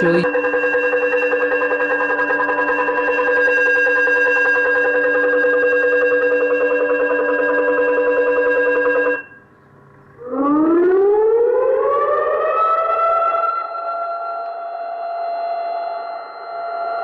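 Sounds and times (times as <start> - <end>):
siren wailing: 0.0 - 9.4, 10.2 - 17.0
electronic gong-bell tone: 0.0 - 9.5.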